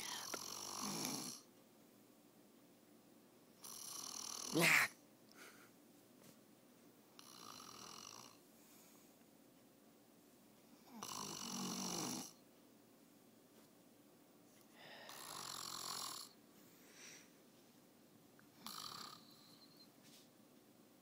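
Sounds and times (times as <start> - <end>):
man snoring: 0.0 - 1.5, 3.6 - 4.9, 7.2 - 8.4, 10.8 - 12.4, 15.0 - 16.4, 18.6 - 19.5.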